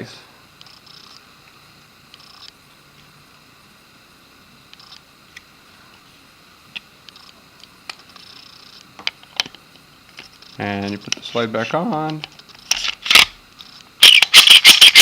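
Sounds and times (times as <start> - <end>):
metal clicks of pistol parts: 12.8 - 13.3, 14.0 - 14.8.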